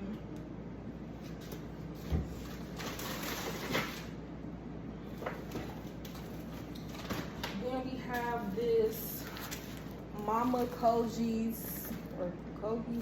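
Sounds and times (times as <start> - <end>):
groceries rustling: 1.2 - 4.2, 5.1 - 12.3.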